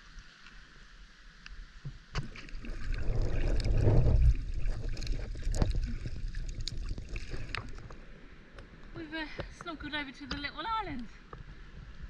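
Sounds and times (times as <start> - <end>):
crackles: 0.0 - 12.0
water sloshing and splashing: 1.8 - 8.8
low rumble: 2.7 - 8.1.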